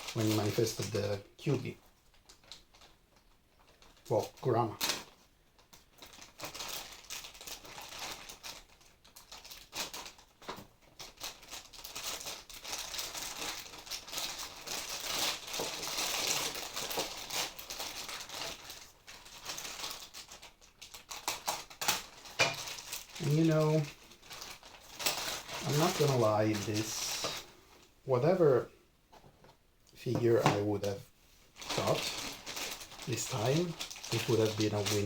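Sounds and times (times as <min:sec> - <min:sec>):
plastic packaging crinkling: 0:00.0 - 0:28.4, 0:30.0 - 0:35.0.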